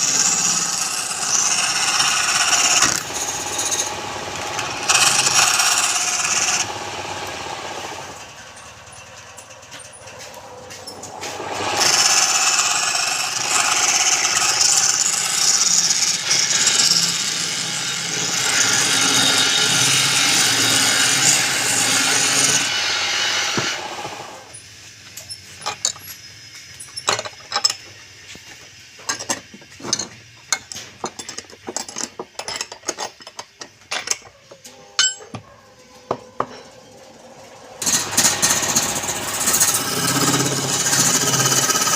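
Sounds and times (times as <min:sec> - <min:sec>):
lathe tool cutting wood: 0:00.0 - 0:08.3, 0:11.1 - 0:24.5, 0:37.8 - 0:41.9.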